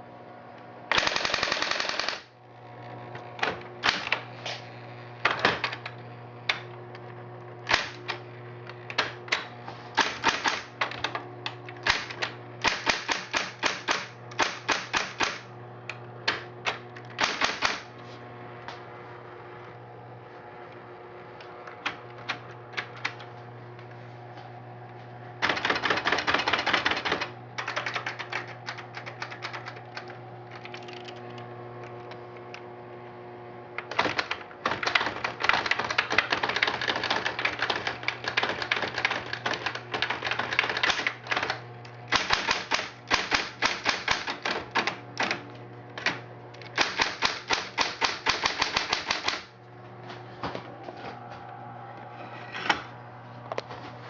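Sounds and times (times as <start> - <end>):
typewriter motor humming: 0.9 - 2.4, 3.1 - 18.0, 25.4 - 32.7, 33.7 - 49.6
typewriter key strikes: 10.0 - 10.9, 11.8 - 15.4, 17.2 - 17.9, 46.8 - 49.5.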